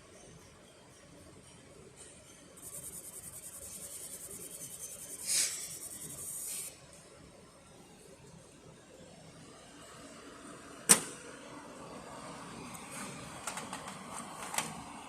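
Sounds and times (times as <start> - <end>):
laser machine pulsing hiss: 2.6 - 6.8.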